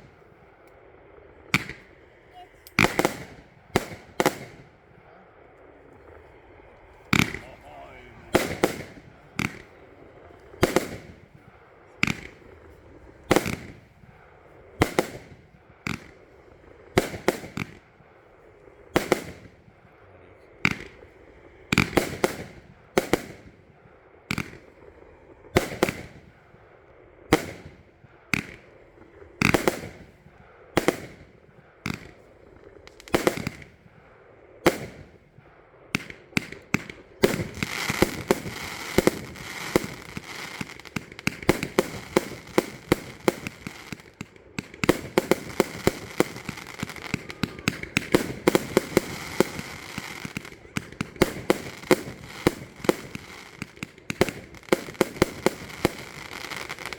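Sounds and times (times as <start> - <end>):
firework bangs with ringing tail: 7.1 - 12.5, 13.3 - 14.2, 36.0 - 56.9.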